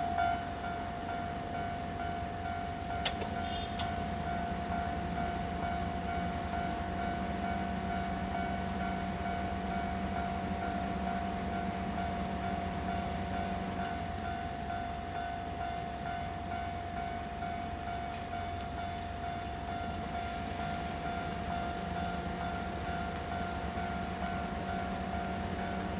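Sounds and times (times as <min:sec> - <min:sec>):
hum: 0:00.0 - 0:25.9
passing train rumble: 0:00.0 - 0:25.9
railroad crossing bell ringing: 0:00.0 - 0:25.9.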